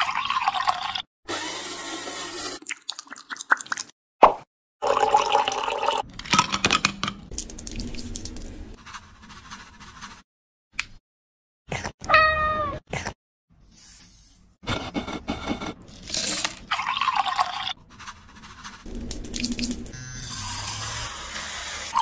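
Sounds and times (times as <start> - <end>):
kitchen clattering: 6.1 - 7.3
cat meowing: 12.1 - 12.8.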